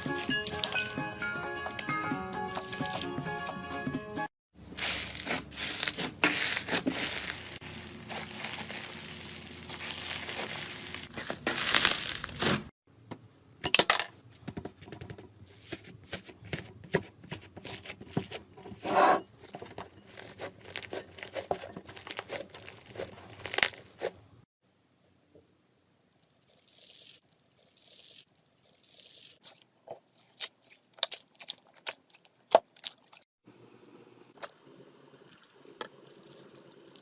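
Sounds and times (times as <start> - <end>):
slime squeezed and stretched: 20.7 - 24.1.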